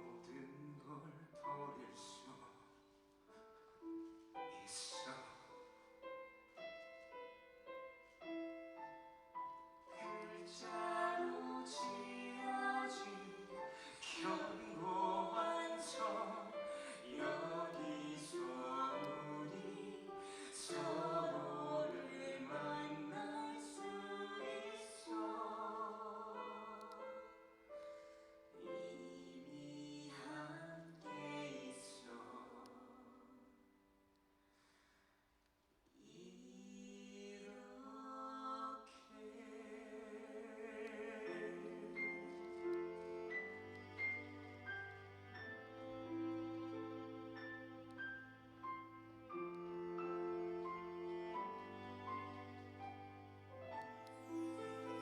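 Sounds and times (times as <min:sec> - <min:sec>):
piano accompaniment: 0:00.0 - 0:32.5, 0:41.2 - 0:55.0
person singing with vibrato: 0:09.9 - 0:27.4, 0:36.0 - 0:43.3.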